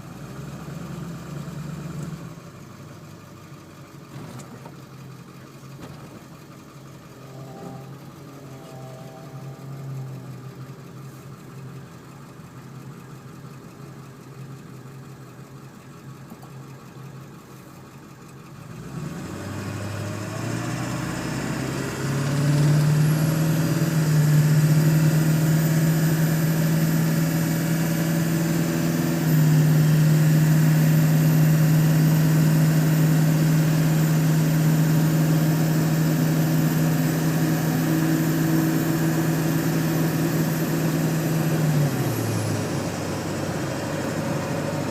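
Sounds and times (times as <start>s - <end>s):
diesel engine idling and revving: 0.0s - 44.9s
turbo whistle: 7.2s - 10.6s.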